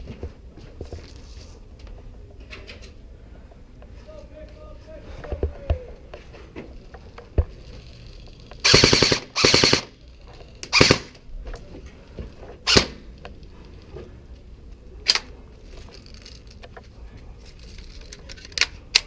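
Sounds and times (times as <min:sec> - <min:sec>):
airsoft gun firing bursts: 0:08.6 - 0:09.9, 0:10.7 - 0:11.1.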